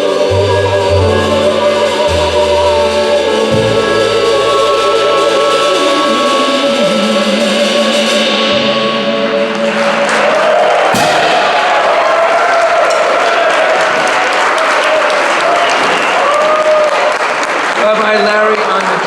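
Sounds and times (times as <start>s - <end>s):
harmonium drones: 0.0s - 10.1s
voices singing: 0.0s - 12.1s
bass line: 0.0s - 12.3s
sharp final hit: 8.2s - 13.2s
audience applause: 9.4s - 19.0s.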